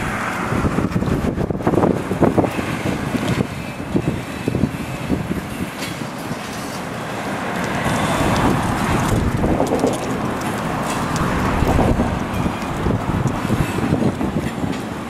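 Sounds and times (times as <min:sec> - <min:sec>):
wind buffeting microphone: 0:00.0 - 0:15.0
low vehicle rumble: 0:07.8 - 0:14.6.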